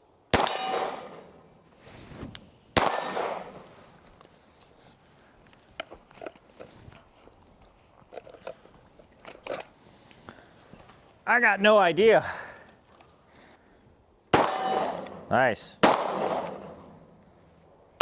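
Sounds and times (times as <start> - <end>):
pistol shots with ringing clang: 0.3 - 1.4, 2.8 - 3.6, 14.4 - 17.1.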